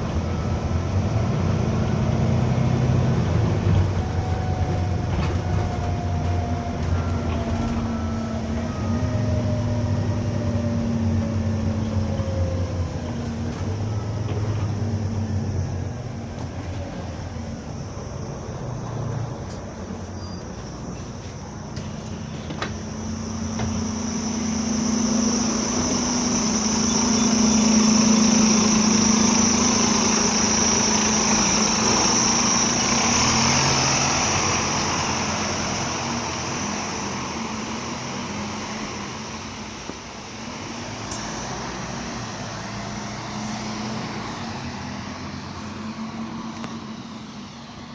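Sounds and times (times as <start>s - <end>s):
bus engine humming: 0.0s - 47.9s
high-pitched whistle: 23.0s - 33.5s.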